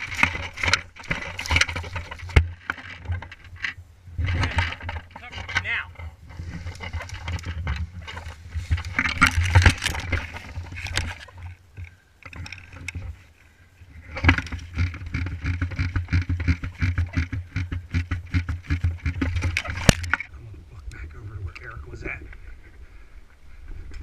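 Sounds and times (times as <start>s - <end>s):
rustling and scuffing: 6.2s - 11.5s.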